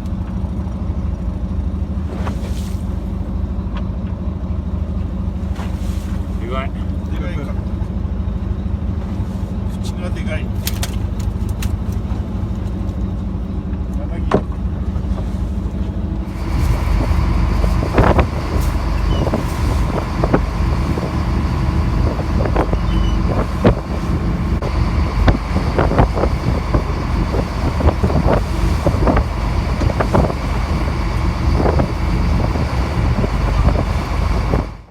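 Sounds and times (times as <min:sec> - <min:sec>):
boat engine running: 0:00.0 - 0:34.9
wind on microphone: 0:16.3 - 0:34.9.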